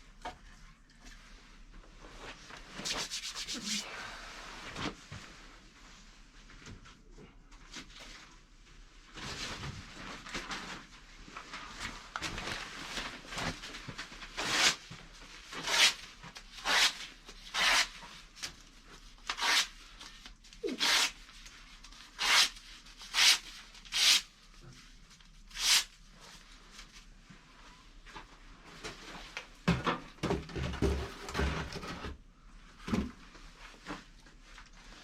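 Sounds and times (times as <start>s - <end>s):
brisk scraping strokes: 2.8s - 3.8s.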